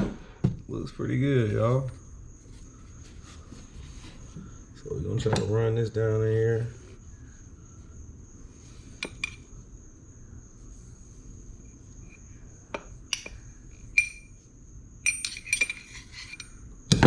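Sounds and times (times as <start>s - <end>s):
faint high-pitched whine: 0.0s - 17.0s
metal parts clinking: 13.1s - 14.4s, 15.0s - 16.6s.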